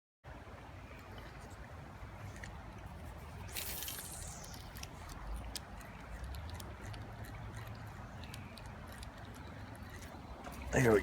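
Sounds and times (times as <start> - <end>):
creek water trickling: 0.3 - 11.0
sudden hiss: 3.4 - 5.2
small ticks: 3.6 - 10.8.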